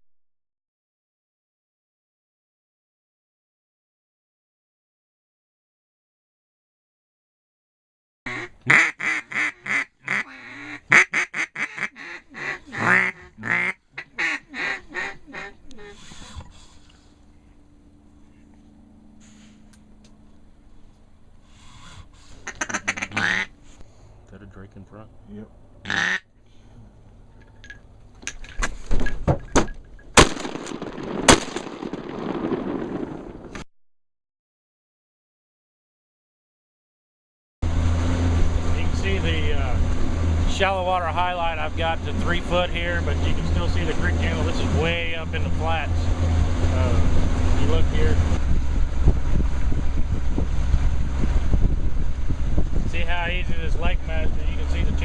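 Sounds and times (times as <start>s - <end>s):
duck quacking: 8.3s - 16.7s, 21.8s - 23.6s, 25.8s - 26.2s
shotguns firing: 30.2s - 33.2s.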